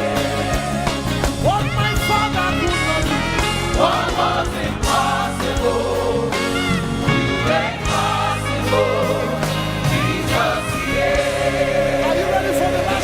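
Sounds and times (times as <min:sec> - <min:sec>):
choir and congregation singing: 0:00.0 - 0:01.5, 0:02.3 - 0:13.0
band playing: 0:00.0 - 0:13.0.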